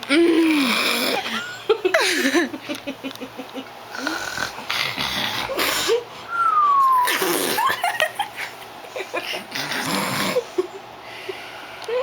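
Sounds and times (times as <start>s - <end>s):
people snoring: 0.1s - 1.4s, 3.9s - 5.9s, 7.1s - 7.7s, 9.5s - 10.5s
long falling whistle: 6.3s - 7.3s.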